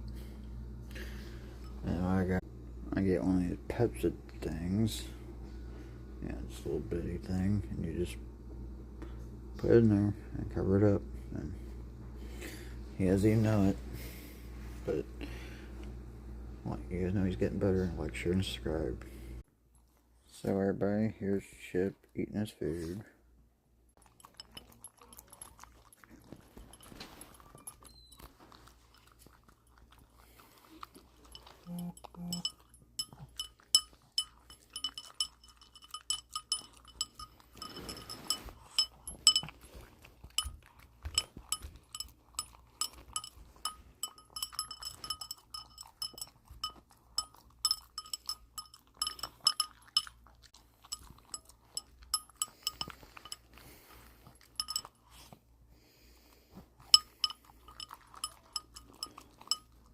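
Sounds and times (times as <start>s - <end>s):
dog eating wet food: 24.0s - 59.9s
bowl clinking: 26.4s - 28.3s, 31.2s - 50.2s, 50.8s - 53.6s, 54.4s - 55.1s, 56.8s - 59.8s.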